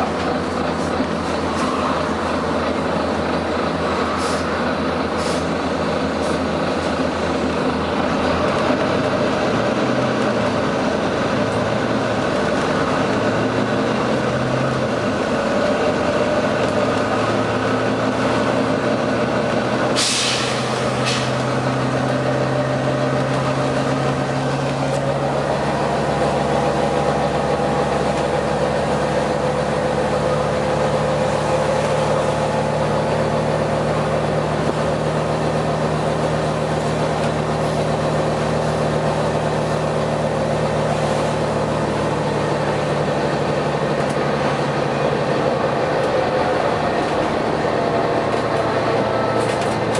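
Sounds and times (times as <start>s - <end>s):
bus diesel engine under load: 0.0s - 49.9s
sharp hiss of air: 20.0s - 21.4s.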